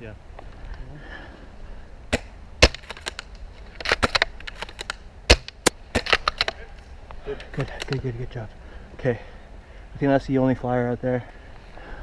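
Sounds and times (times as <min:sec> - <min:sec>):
airsoft rifle shots: 0:02.1 - 0:06.6.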